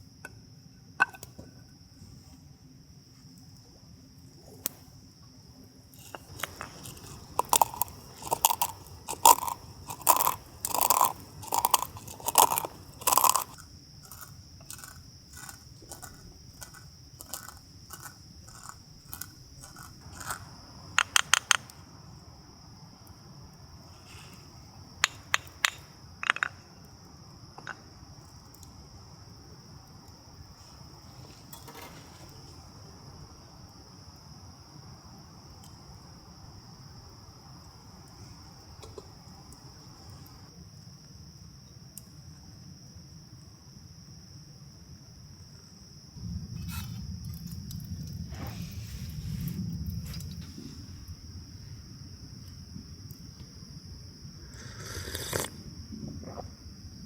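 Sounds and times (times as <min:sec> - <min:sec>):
crickets trilling: 0:00.0 - 0:57.0
crunching clicks: 0:06.0 - 0:21.8.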